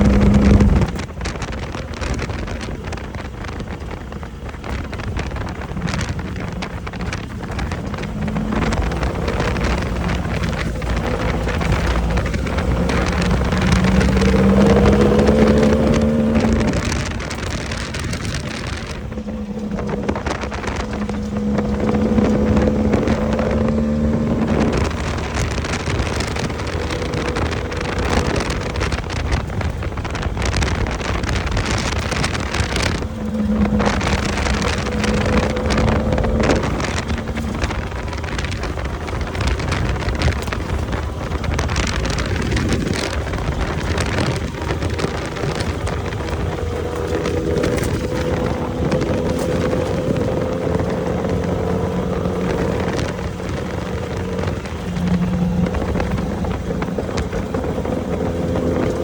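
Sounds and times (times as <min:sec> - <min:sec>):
chassis rumble and rattle on dirt: 0:00.0 - 0:59.0
off-road vehicle engine revving: 0:00.0 - 0:59.0
wind buffeting microphone: 0:00.0 - 0:59.0.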